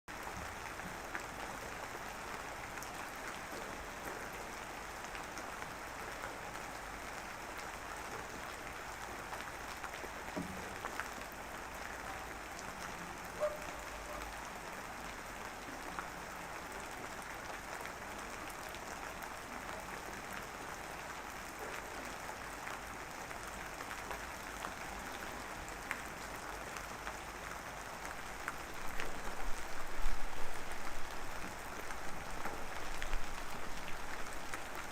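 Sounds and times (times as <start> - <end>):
light rain hissing: 23.8 - 34.9.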